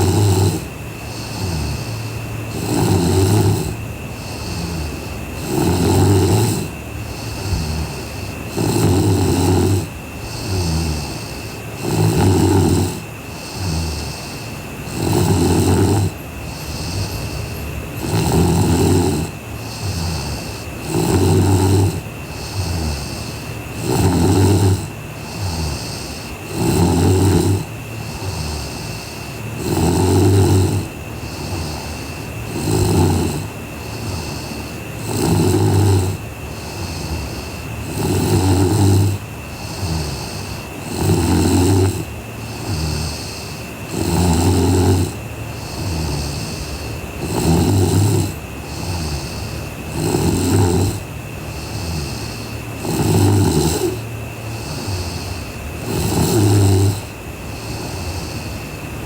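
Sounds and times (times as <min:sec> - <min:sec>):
woman snoring: 0:00.0 - 0:59.0.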